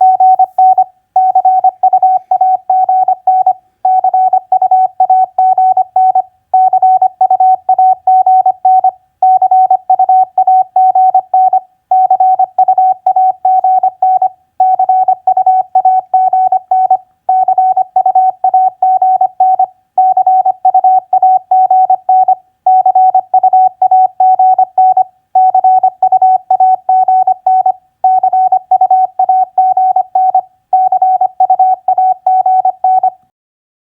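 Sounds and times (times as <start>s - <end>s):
morse code tone: 0.0s - 33.2s.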